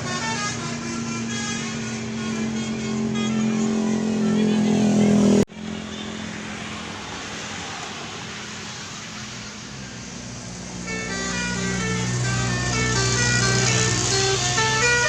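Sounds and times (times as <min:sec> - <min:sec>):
multi-note bus horn tune: 0:00.0 - 0:06.2, 0:10.6 - 0:15.0
vehicle engine and road noise: 0:00.0 - 0:15.0.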